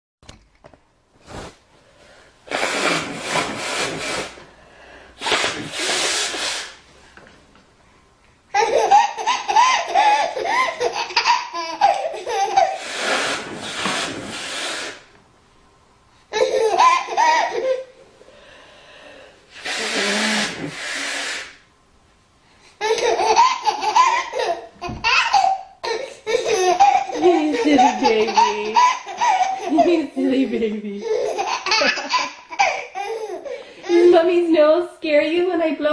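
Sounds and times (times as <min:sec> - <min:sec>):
woman blowing her nose: 0:02.4 - 0:06.9, 0:12.6 - 0:15.1, 0:19.5 - 0:21.7, 0:26.0 - 0:30.1
baby laughing: 0:08.5 - 0:13.3, 0:16.3 - 0:17.9, 0:22.8 - 0:34.2.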